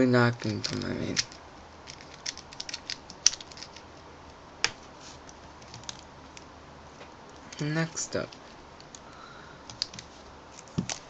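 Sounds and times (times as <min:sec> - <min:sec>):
plastic cubes clicking and tapping: 0:00.3 - 0:03.8, 0:09.7 - 0:10.1, 0:10.7 - 0:11.0.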